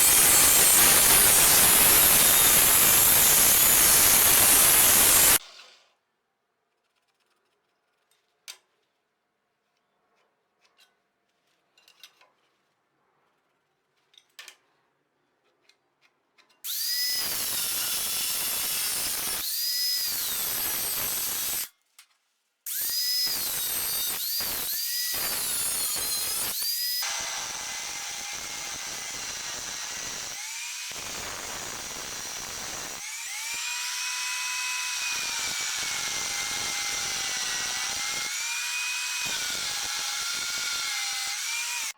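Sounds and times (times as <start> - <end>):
electric power tool motor: 0.0 - 5.4, 16.7 - 21.7, 22.7 - 41.9.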